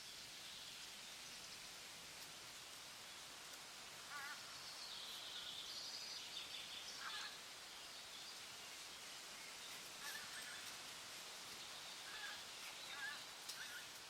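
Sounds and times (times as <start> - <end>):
steady outdoor hiss: 0.0 - 14.0
wild birds calling: 11.9 - 14.0.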